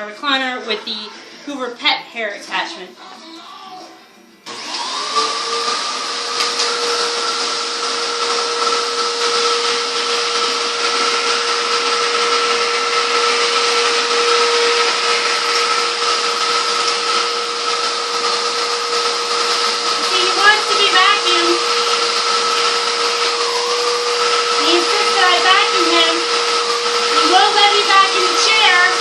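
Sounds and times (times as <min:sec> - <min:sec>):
vacuum cleaner motor whine: 0:03.7 - 0:29.0.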